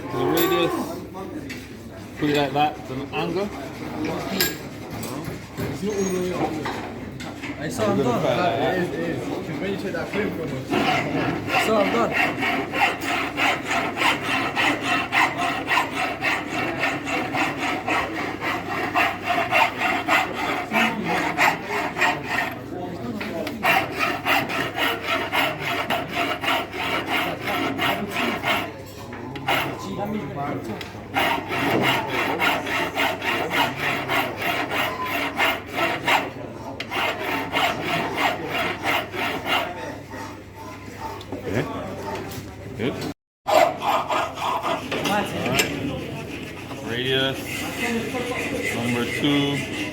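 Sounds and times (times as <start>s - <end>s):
hand file rasping on steel: 9.9s - 30.2s, 31.1s - 41.2s, 43.5s - 49.9s.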